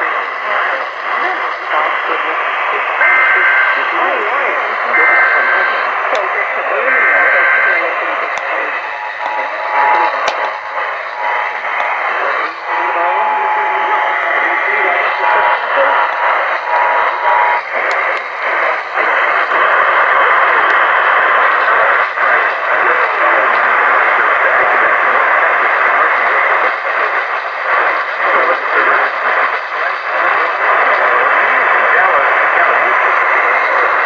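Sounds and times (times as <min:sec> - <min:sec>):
person speaking over radio: 0:00.0 - 0:34.0
two-tone attention signal: 0:06.8 - 0:17.7.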